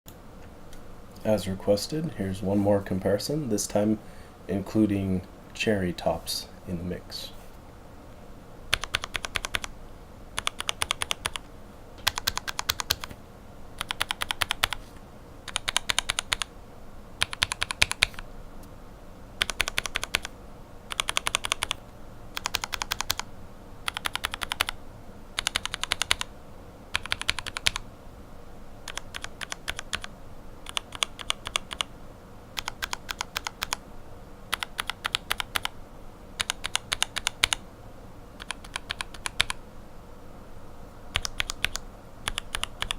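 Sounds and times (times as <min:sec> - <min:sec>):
mechanical keyboard typing: 0:08.7 - 0:09.7, 0:10.4 - 0:11.4, 0:12.0 - 0:13.2, 0:13.8 - 0:14.8, 0:15.5 - 0:16.5, 0:17.2 - 0:18.2, 0:19.4 - 0:20.3, 0:20.9 - 0:21.8, 0:22.4 - 0:24.8, 0:25.4 - 0:26.3, 0:26.9 - 0:27.8, 0:28.9 - 0:31.9, 0:32.6 - 0:33.8, 0:34.5 - 0:35.7, 0:36.4 - 0:37.6, 0:38.4 - 0:39.6, 0:41.1 - 0:42.9.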